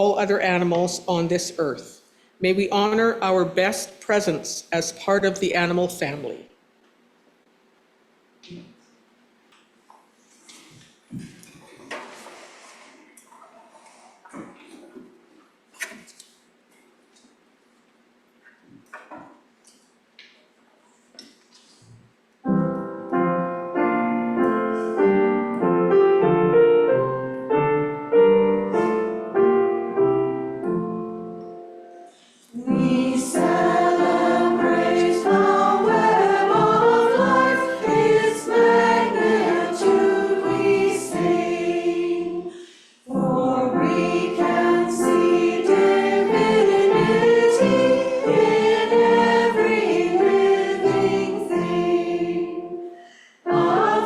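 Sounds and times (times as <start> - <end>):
piano playing: 22.4 - 42.5, 43.1 - 54.0
voices singing: 32.5 - 52.9, 53.5 - 54.0.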